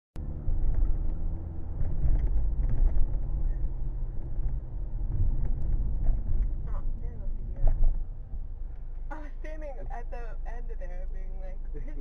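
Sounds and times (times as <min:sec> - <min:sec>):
car engine rumble: 0:00.2 - 0:12.0
road noise: 0:00.2 - 0:12.0.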